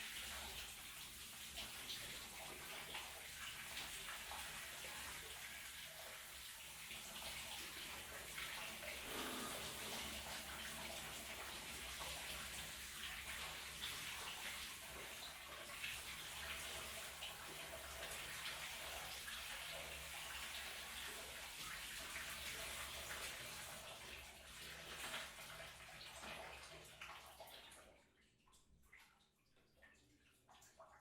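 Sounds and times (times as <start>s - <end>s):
water dripping: 0.0s - 31.0s
shower spray splashing: 8.9s - 11.7s.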